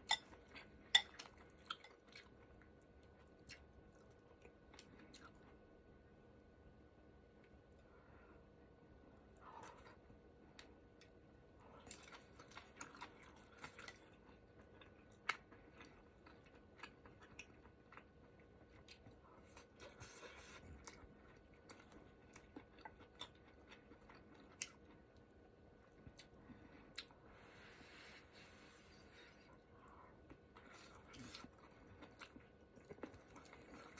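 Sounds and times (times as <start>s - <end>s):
chewing and mouth sounds: 0.0s - 5.6s, 9.4s - 27.2s, 29.2s - 33.9s.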